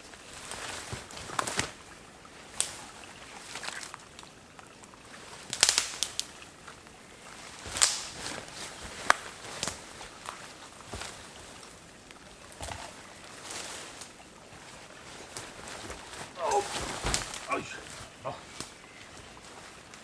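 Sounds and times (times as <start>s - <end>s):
sticks and twigs snapping: 5.5s - 6.4s, 7.7s - 8.4s, 9.0s - 10.4s, 16.3s - 17.5s, 18.5s - 18.8s.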